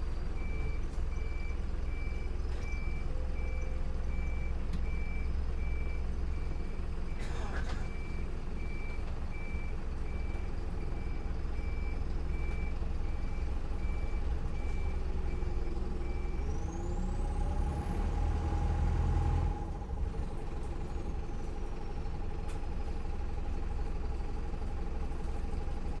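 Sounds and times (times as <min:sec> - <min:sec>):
bus engine running: 0:00.0 - 0:26.0.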